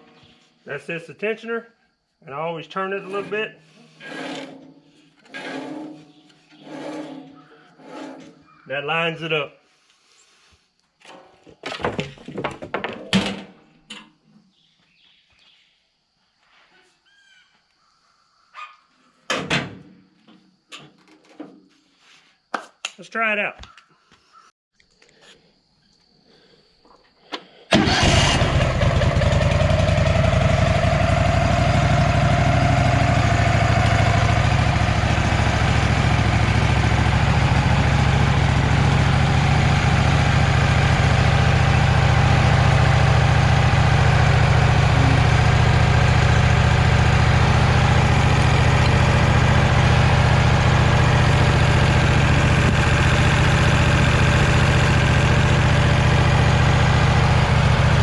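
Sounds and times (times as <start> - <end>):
gasoline engine starting and running: 2.7 - 8.6, 27.3 - 58.0.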